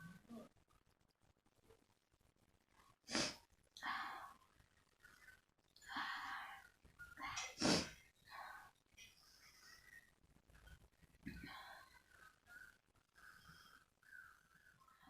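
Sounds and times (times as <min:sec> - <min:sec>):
noisy breaths: 0:05.0 - 0:15.0
person sneezing: 0:07.6 - 0:07.9.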